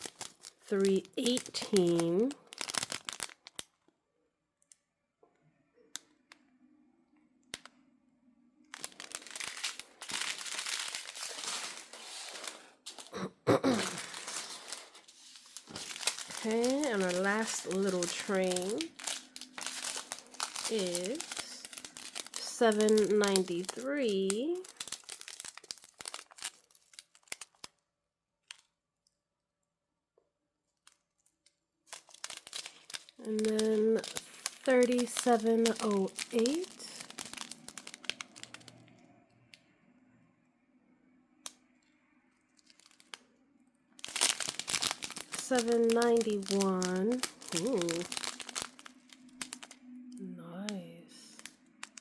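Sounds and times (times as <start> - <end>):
plastic packets crinkling: 0.0 - 3.8, 8.6 - 27.7, 28.4 - 28.7, 31.9 - 39.0, 42.4 - 43.3, 44.0 - 52.0.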